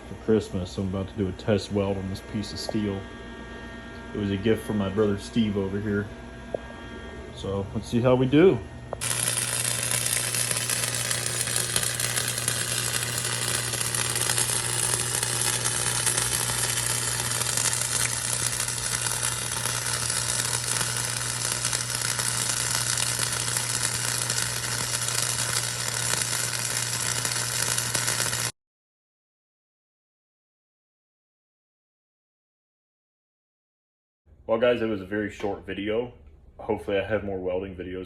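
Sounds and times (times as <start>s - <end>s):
low electrical buzz: 0.0s - 28.5s
welding arc crackling: 9.0s - 28.5s.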